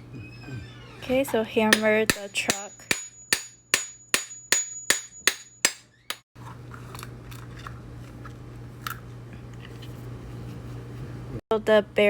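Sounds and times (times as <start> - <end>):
hammer blows on metal axle: 1.7 - 6.2.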